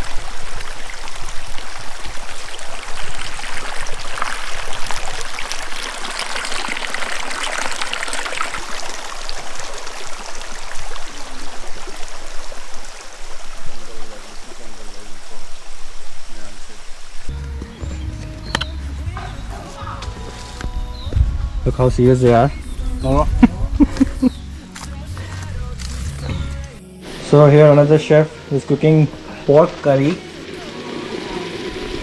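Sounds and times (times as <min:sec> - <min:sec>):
stream with small waterfall: 0:00.0 - 0:20.3, 0:27.1 - 0:32.0.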